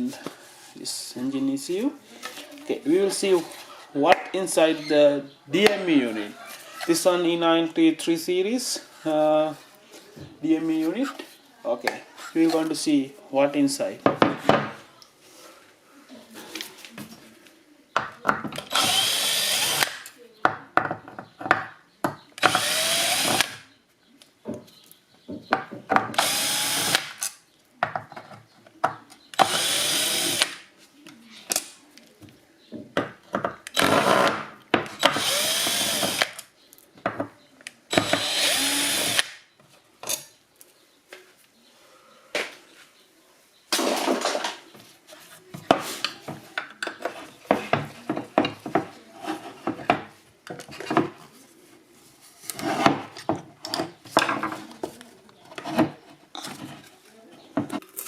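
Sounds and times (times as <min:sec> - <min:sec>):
power drill spinning: 0:18.7 - 0:20.0, 0:22.4 - 0:23.6, 0:26.2 - 0:27.1, 0:29.4 - 0:30.6, 0:35.0 - 0:36.3, 0:37.9 - 0:39.3
scraping and rattling of parts: 0:43.7 - 0:51.3, 0:52.4 - 0:58.0.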